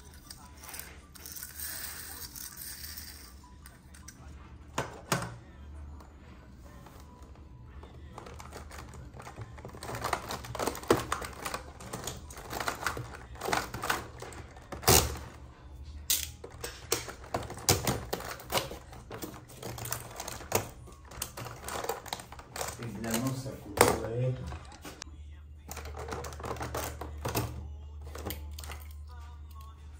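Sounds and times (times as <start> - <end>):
plastic toys and packaging clicking: 7.9 - 15.4, 16.0 - 25.0, 25.6 - 29.9.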